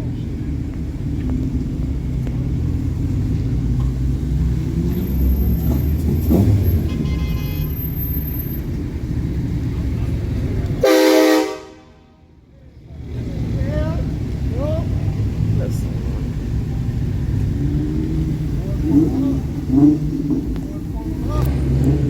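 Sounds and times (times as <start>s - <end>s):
car engines rumbling: 0.0s - 22.0s
car horn blaring: 6.3s - 8.3s, 10.8s - 12.2s.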